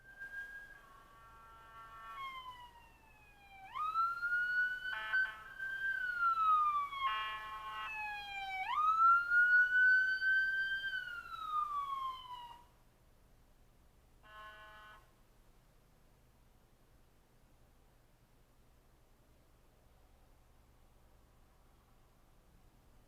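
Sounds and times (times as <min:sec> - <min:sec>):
emergency vehicle siren wailing: 0:00.0 - 0:12.7
horn blasts: 0:00.1 - 0:02.5, 0:07.0 - 0:08.1, 0:14.2 - 0:15.2.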